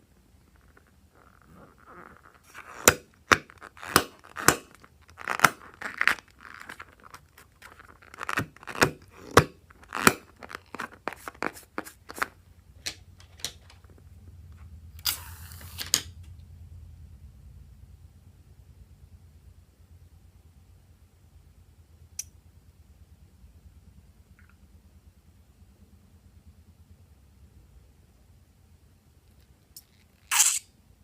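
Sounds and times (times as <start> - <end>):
crinkling rustle: 0.4 - 14.0.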